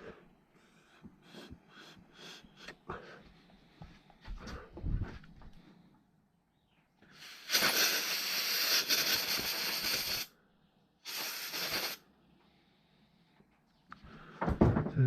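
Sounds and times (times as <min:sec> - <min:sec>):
pressurised spray hissing: 0:07.1 - 0:10.3, 0:11.0 - 0:12.0.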